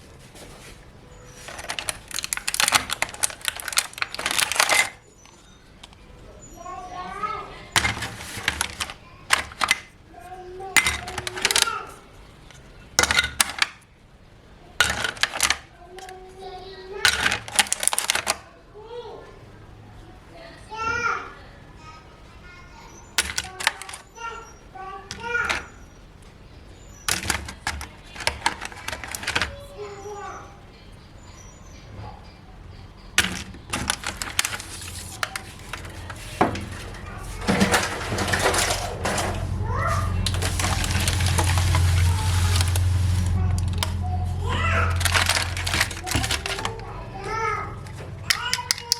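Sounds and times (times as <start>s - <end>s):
plastic toy pieces clicking: 1.5s - 6.0s, 7.8s - 10.0s, 10.8s - 11.8s, 12.5s - 13.8s, 14.8s - 16.2s, 17.0s - 18.4s, 23.2s - 24.1s, 27.0s - 29.6s, 33.2s - 36.2s, 40.2s - 48.9s.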